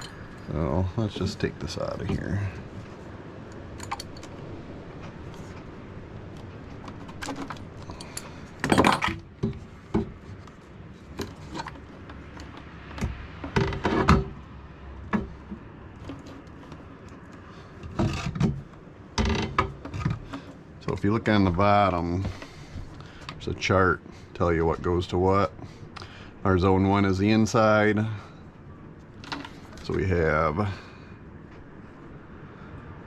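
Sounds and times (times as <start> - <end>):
plastic car stereo clicking and rattling: 11.1 - 14.4.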